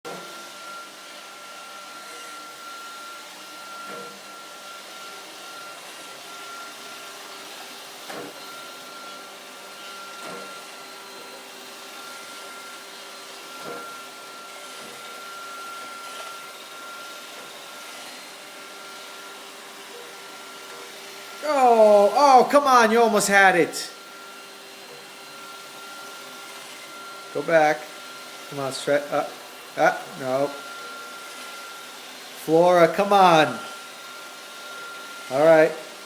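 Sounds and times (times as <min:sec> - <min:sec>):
robot vacuum motor whine: 0:00.1 - 0:22.2, 0:23.1 - 0:36.0.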